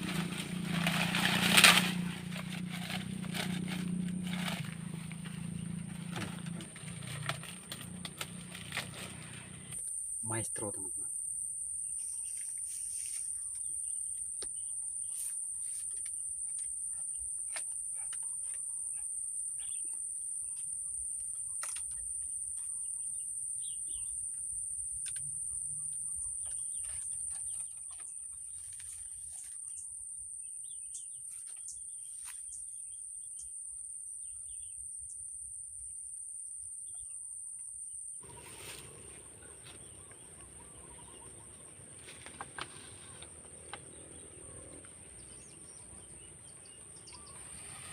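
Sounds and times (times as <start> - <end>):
bird chirps: 18.2 - 28.7, 43.8 - 47.9.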